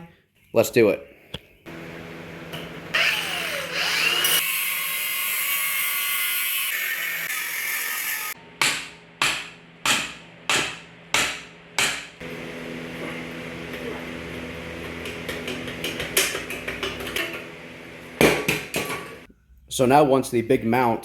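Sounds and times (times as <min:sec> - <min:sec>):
power tool cutting steel: 0:02.9 - 0:08.4.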